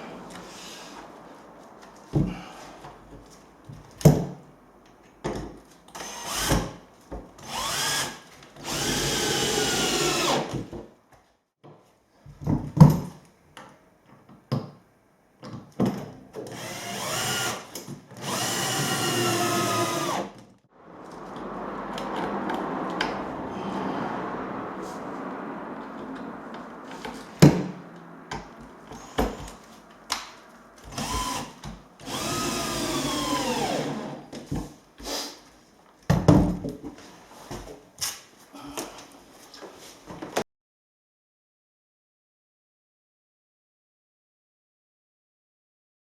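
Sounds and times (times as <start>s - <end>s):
power drill whining: 6.0s - 6.8s, 7.4s - 10.6s, 16.5s - 20.4s, 30.8s - 34.7s.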